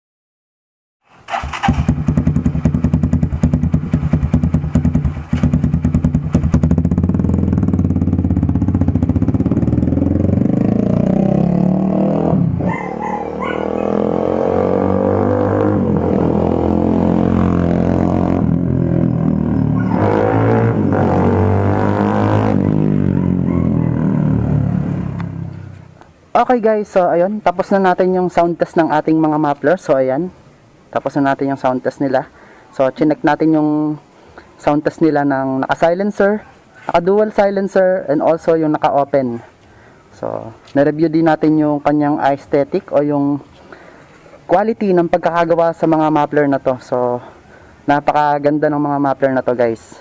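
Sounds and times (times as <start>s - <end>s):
motorcycle engine revving: 1.2s - 26.0s.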